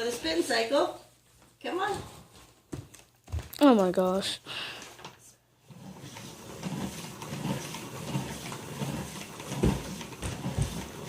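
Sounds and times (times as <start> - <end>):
salad spinner plastic whirring: 5.6 - 11.0.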